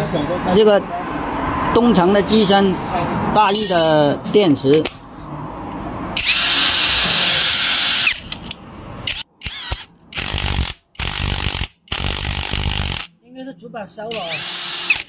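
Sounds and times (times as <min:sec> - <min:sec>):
power tool motor whining: 0:06.2 - 0:08.2, 0:09.1 - 0:13.1, 0:14.2 - 0:15.0.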